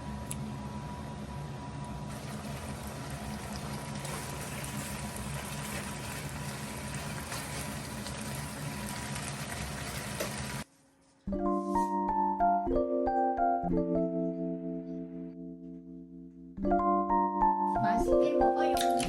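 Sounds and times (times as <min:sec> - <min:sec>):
pot boiling: 0:00.0 - 0:10.7.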